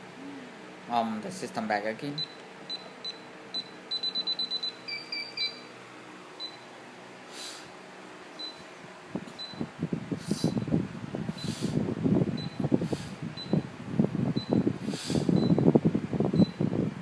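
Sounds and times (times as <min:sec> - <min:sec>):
alarm keypad beeping: 0:02.2 - 0:05.7
short hisses: 0:07.3 - 0:07.7.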